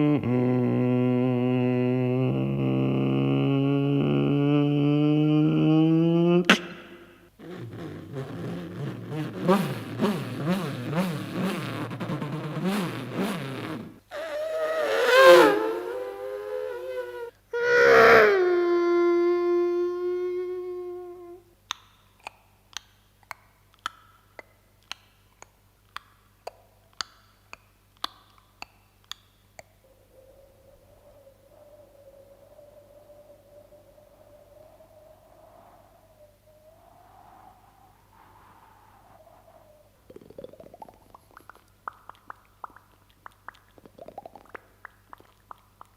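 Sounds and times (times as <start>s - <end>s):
mouth clicks: 0.0s - 18.2s, 21.6s - 30.1s, 39.7s - 45.9s
man imitating sound effects: 0.0s - 18.5s
faint hum: 0.0s - 21.6s, 29.6s - 44.7s.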